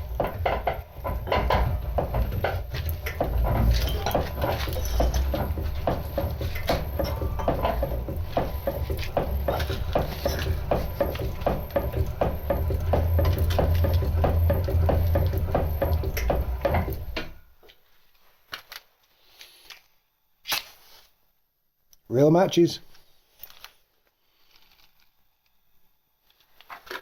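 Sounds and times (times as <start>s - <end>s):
drive motor hum: 0.0s - 17.4s
power hammer blows: 0.0s - 17.4s.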